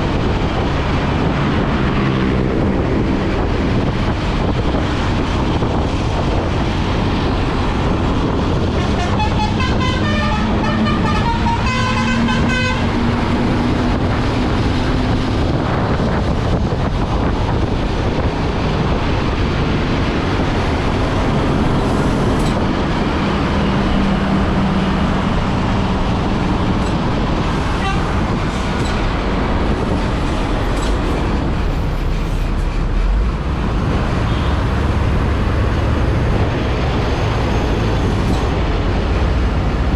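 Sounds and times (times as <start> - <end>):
bus engine and road noise: 0.0 - 39.9
multi-tone bus horn tune: 8.6 - 13.3, 27.7 - 28.3.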